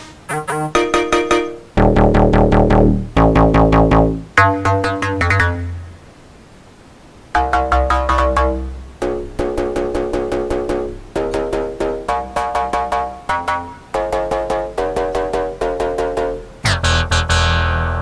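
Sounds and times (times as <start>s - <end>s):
synth melody phrases: 0.0s - 6.1s, 7.4s - 18.0s
heavy bass: 1.8s - 6.0s, 16.6s - 18.0s.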